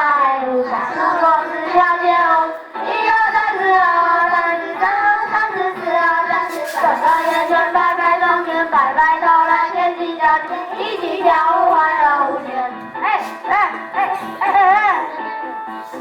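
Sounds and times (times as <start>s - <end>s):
high child-like voice singing: 0.0s - 12.7s
instrumental music: 0.6s - 16.0s.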